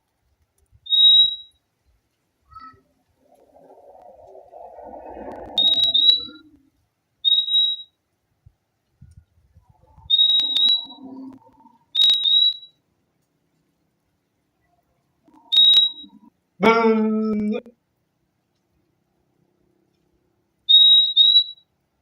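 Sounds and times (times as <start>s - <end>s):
bird high whistled calls: 0.8s - 1.6s, 4.5s - 6.6s, 7.2s - 7.9s, 10.0s - 12.7s, 15.4s - 16.3s, 20.7s - 21.6s
faint low rustling: 1.9s - 7.0s.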